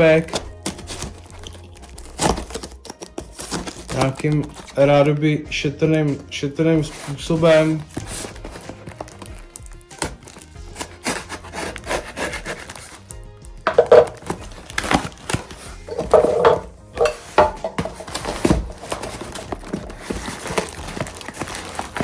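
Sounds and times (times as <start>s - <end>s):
knife scraping box stickers: 0.3s - 4.8s, 10.0s - 13.1s.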